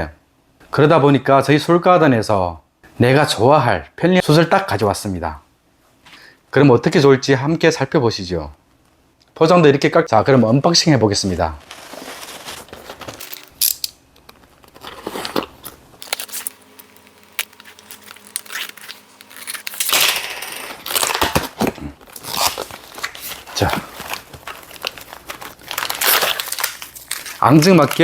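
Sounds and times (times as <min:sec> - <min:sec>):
packaging crinkling and tearing: 0:11.6 - 0:28.0.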